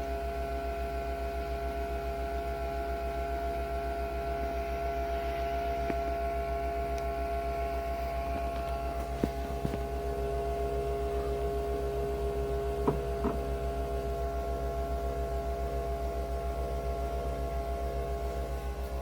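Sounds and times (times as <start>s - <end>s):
electrical hum: 0.0s - 19.0s
pulsing low drone: 2.6s - 19.0s.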